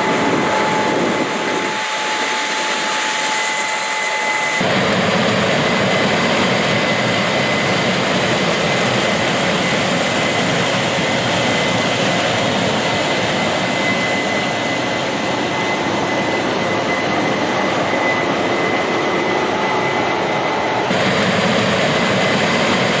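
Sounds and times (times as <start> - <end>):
heavy farm machinery rumbling: 0.0 - 13.6, 20.6 - 23.0
high mechanical whine: 0.0 - 23.0.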